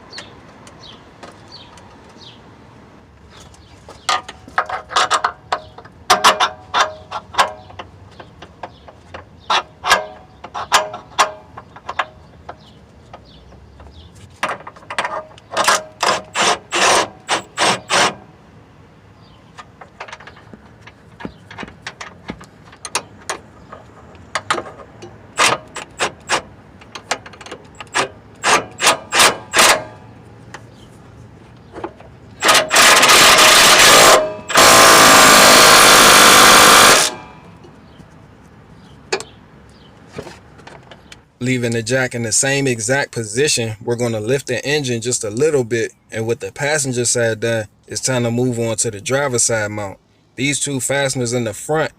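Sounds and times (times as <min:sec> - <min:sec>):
impact wrench hammering: 0:27.9 - 0:30.0, 0:32.4 - 0:37.6.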